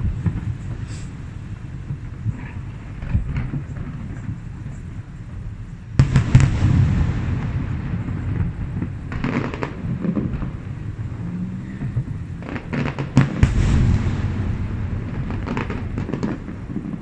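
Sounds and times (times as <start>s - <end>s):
fireworks bangs: 0.0s - 17.0s
fireworks crackles: 0.0s - 17.0s
rumbling echo: 0.0s - 17.0s.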